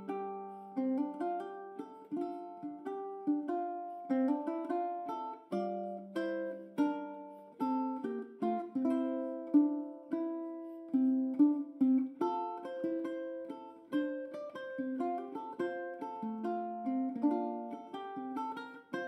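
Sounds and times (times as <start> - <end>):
plucked string melody: 0.0 - 19.0.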